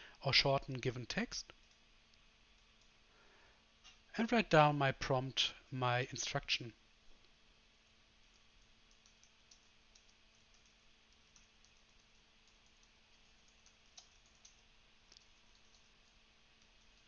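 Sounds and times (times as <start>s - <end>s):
typing on computer keyboard: 8.2s - 17.0s.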